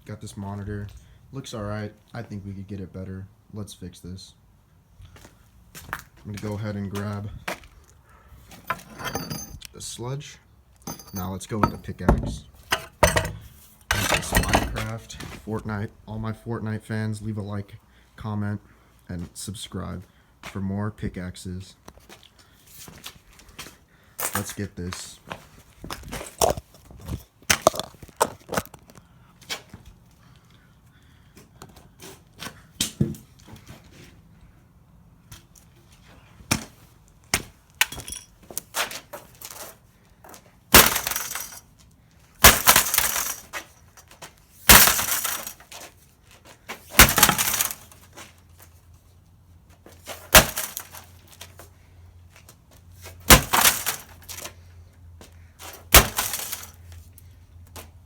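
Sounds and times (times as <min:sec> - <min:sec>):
glass breaking and clinking: 0:08.7 - 0:09.6, 0:10.9 - 0:14.9, 0:40.8 - 0:41.6, 0:42.5 - 0:43.4, 0:44.7 - 0:45.5, 0:47.0 - 0:47.8, 0:50.4 - 0:51.0, 0:53.3 - 0:54.1, 0:56.0 - 0:56.7
pickaxe smashing monitor: 0:08.7 - 0:09.6, 0:10.9 - 0:15.0, 0:40.8 - 0:41.6, 0:42.4 - 0:43.5, 0:44.7 - 0:45.6, 0:47.0 - 0:47.8, 0:50.3 - 0:51.0, 0:53.3 - 0:54.2, 0:55.9 - 0:56.7.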